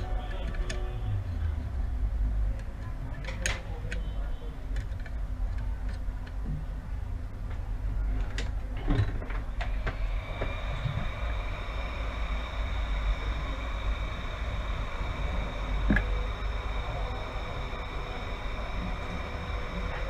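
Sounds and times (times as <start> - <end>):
steady machine hum: 9.5 - 20.0
faint high-pitched tones: 9.7 - 20.0.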